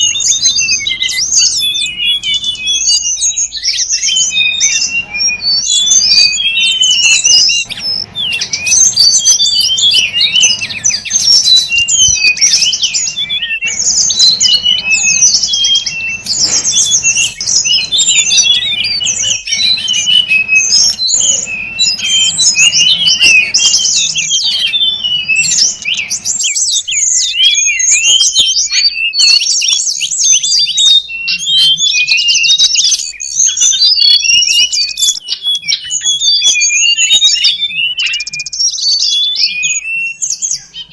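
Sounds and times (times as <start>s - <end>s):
low background hum: 0.0s - 27.6s
songbird chirps and trills: 0.0s - 40.9s.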